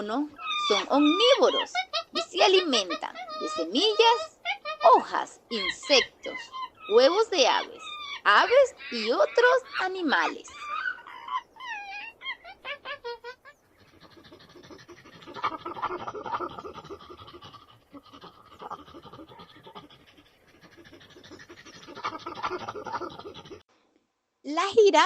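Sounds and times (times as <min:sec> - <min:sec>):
monkeys rapid chattering: 0:00.0 - 0:23.6
monkeys wavering high calls: 0:00.0 - 0:23.6.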